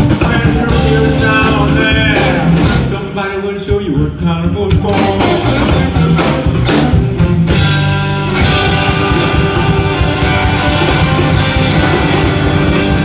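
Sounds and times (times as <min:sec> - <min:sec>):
rock band playing: 0:00.0 - 0:13.0
electric guitar: 0:04.8 - 0:13.0.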